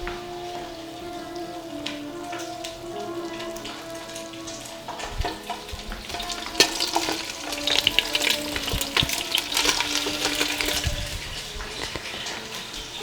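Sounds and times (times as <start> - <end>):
chicken frying in hot oil: 0.0 - 13.0.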